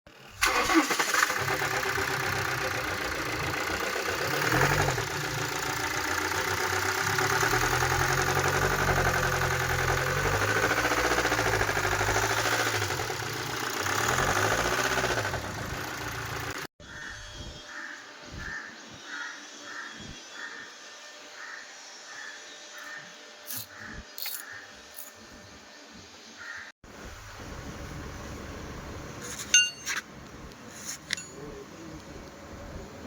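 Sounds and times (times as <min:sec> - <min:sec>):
diesel engine running and revving: 0:00.1 - 0:16.7.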